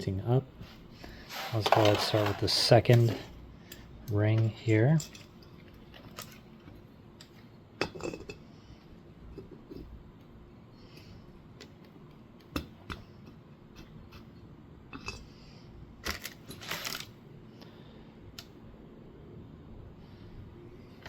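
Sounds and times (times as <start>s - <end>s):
light metallic clicks and scrapes: 1.1s - 8.4s.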